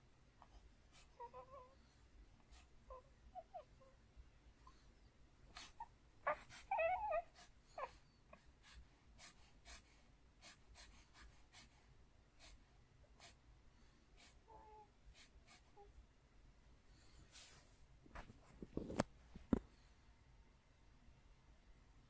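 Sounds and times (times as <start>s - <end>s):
baby whimpering: 1.0s - 1.8s, 2.6s - 4.0s, 5.6s - 8.1s, 14.2s - 14.9s.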